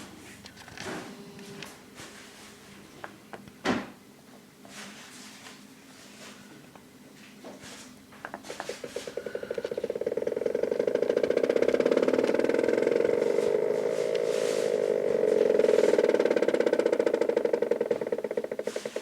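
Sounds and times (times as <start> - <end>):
stepper motor ticking hum: 8.6 - 19.0.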